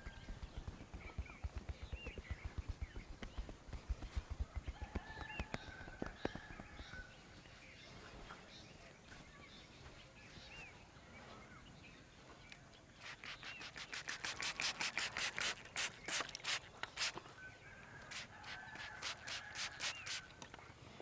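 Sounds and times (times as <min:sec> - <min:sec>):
hands rubbing hair in massage: 0:00.0 - 0:06.7, 0:13.0 - 0:17.2, 0:18.1 - 0:20.3.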